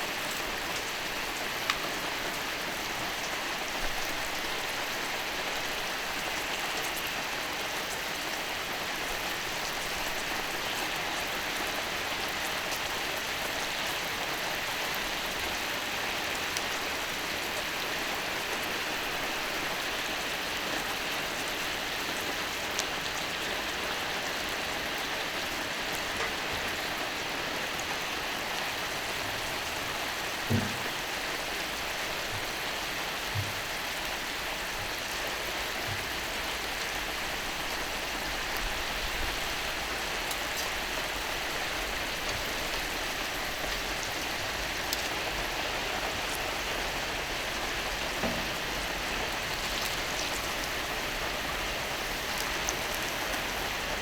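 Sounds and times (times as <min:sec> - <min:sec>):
soft knocks: 0:30.5 - 0:31.3, 0:33.3 - 0:33.8, 0:48.2 - 0:49.3
steak sizzling on a griddle: 0:35.6 - 0:54.0.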